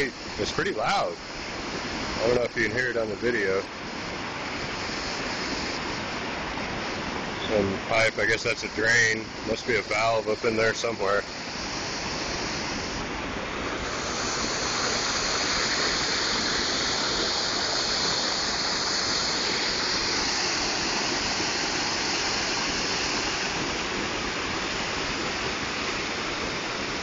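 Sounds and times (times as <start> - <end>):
water pouring over a dam: 13.4 - 27.0.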